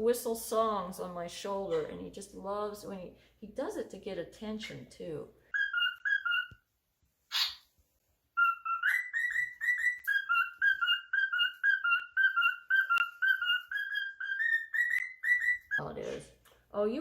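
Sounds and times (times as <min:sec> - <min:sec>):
cockatiel whistling: 0:05.5 - 0:06.6, 0:07.3 - 0:07.6, 0:08.4 - 0:15.8.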